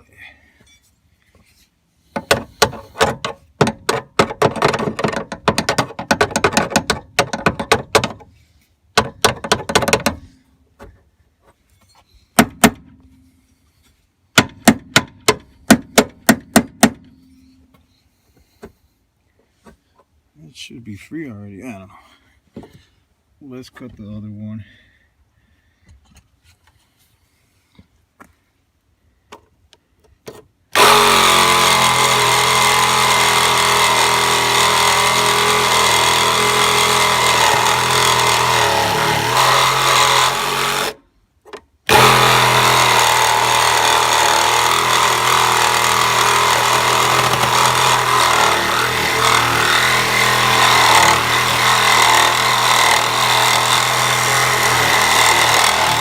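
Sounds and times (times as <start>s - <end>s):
power tool cutting metal pin: 30.8s - 41.0s, 41.9s - 56.0s.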